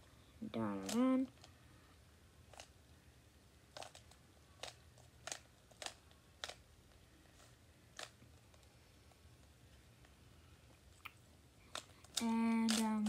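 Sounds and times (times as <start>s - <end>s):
puzzle cube plastic clicks: 0.6s - 1.6s, 3.7s - 8.7s, 11.7s - 13.0s.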